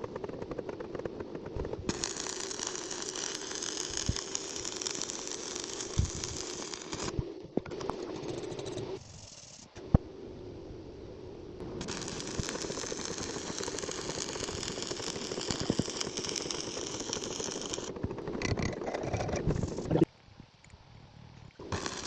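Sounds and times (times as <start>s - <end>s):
welding arc crackling: 1.9s - 7.2s, 11.7s - 19.9s, 21.6s - 22.0s.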